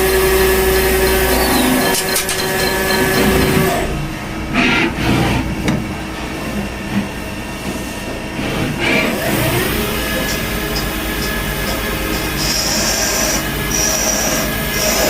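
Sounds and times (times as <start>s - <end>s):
machinery clunks: 0.0s - 6.7s
machinery humming: 0.0s - 15.0s.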